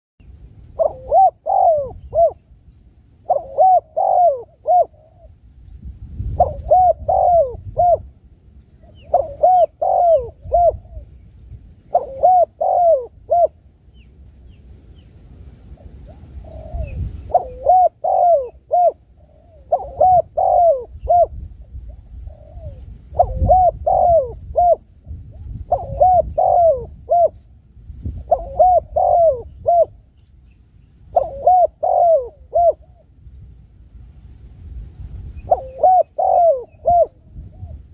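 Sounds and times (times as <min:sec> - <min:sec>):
dove cooing: 0:00.6 - 0:02.5, 0:03.2 - 0:05.4, 0:06.2 - 0:11.2, 0:11.8 - 0:13.6, 0:15.7 - 0:30.1, 0:31.1 - 0:33.2, 0:35.4 - 0:37.9.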